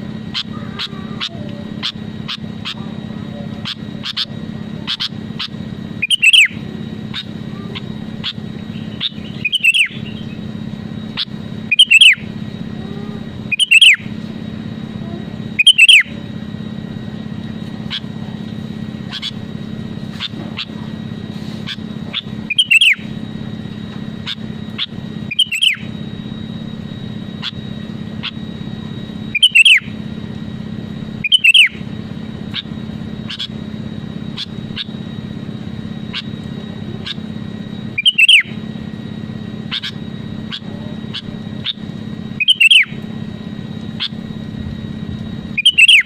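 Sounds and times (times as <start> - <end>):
bulbul calling: 0.0 - 14.2, 15.5 - 16.3, 17.8 - 18.2, 19.0 - 19.5, 20.1 - 20.9, 21.6 - 23.3, 24.1 - 26.1, 27.2 - 30.0, 31.1 - 35.1, 35.9 - 38.7, 39.6 - 43.1, 43.8 - 44.4, 45.5 - 46.0
steady low hum: 0.0 - 46.0.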